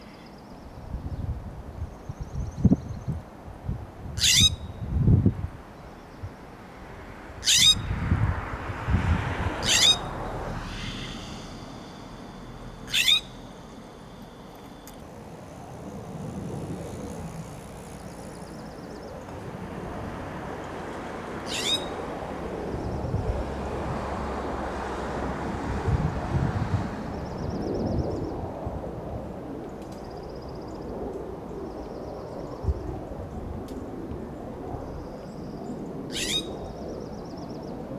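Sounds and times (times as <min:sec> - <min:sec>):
low wind rumble: 0:00.7 - 0:37.6
bird harsh scolding calls: 0:04.2 - 0:04.6, 0:07.4 - 0:07.9, 0:09.6 - 0:19.3, 0:21.4 - 0:22.0, 0:36.1 - 0:36.5.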